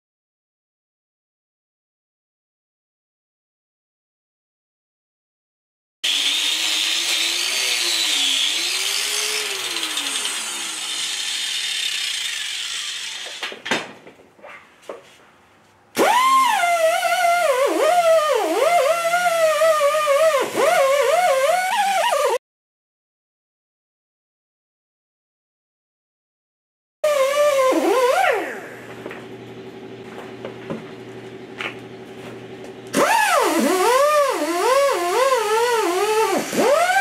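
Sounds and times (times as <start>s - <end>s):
power tool whirring on metal: 6.0s - 13.5s, 16.0s - 22.4s, 27.1s - 28.7s, 32.9s - 37.0s.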